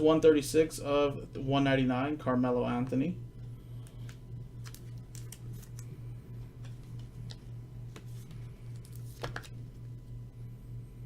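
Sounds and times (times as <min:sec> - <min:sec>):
low electrical hum: 0:00.0 - 0:11.0
trading cards clicking: 0:03.8 - 0:05.9.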